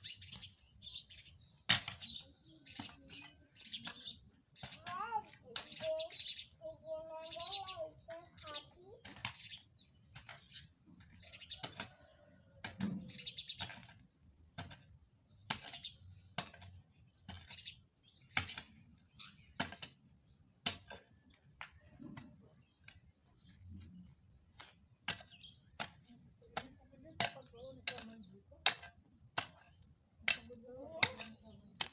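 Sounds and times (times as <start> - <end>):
birds chirping faintly: 0.0 - 31.9
hand tool chopping into soil: 24.6 - 31.9.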